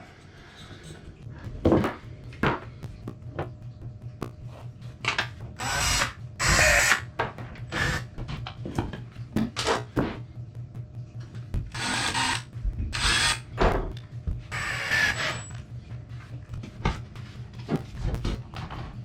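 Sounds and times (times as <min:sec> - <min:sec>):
low steady hum: 0:00.0 - 0:19.0
power drill running: 0:05.6 - 0:07.1, 0:07.7 - 0:08.1, 0:11.7 - 0:13.5, 0:14.5 - 0:15.6.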